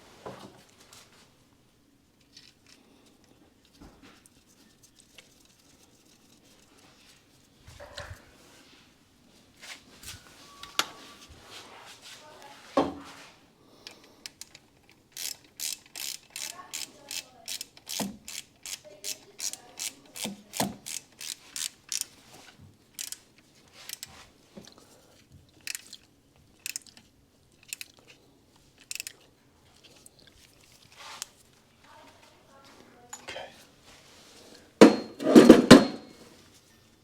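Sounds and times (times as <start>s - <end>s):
ratchet wrench clicking: 14.3s - 22.2s, 22.9s - 23.2s, 23.8s - 24.1s, 25.6s - 28.0s, 28.8s - 29.1s
tools knocking on metal: 34.8s - 36.1s.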